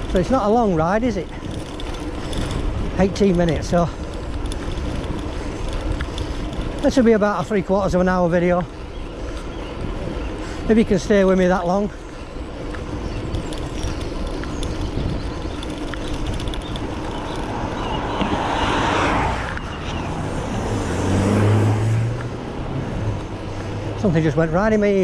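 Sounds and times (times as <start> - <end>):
vehicle engine hum: 0.0 - 25.0
wind rumble on microphone: 0.0 - 25.0.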